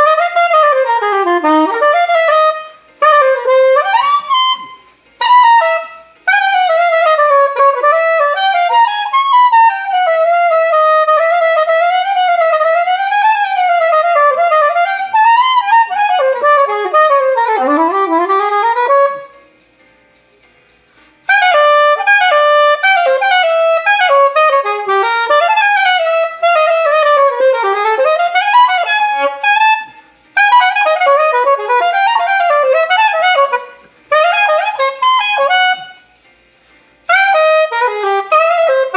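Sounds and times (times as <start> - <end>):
solo wind instrument melody: 0.0 - 19.6, 21.2 - 36.3, 37.0 - 38.9.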